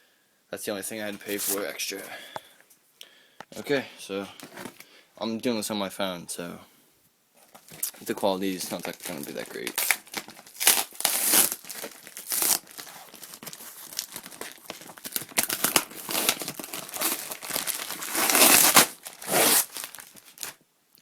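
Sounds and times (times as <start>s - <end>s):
packaging crinkling and tearing: 1.2s - 1.6s, 7.5s - 20.6s.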